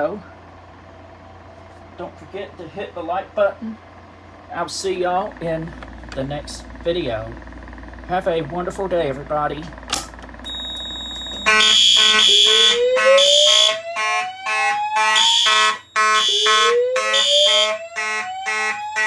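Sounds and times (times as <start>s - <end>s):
alarm horns pulsing: 10.4s - 19.0s
alarm speaker whooping: 10.4s - 19.0s.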